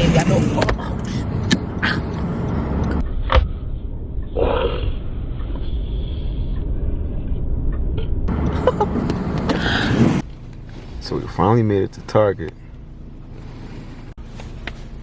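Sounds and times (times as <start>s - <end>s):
car driving rumble from inside: 0.0s - 15.0s.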